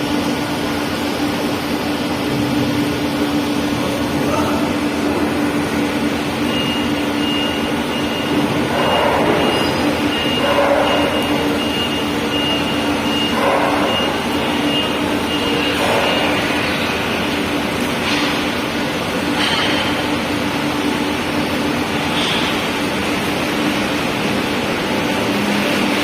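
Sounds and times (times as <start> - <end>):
vehicle engine humming: 0.0 - 26.0
electronic warning beeps: 6.2 - 17.0.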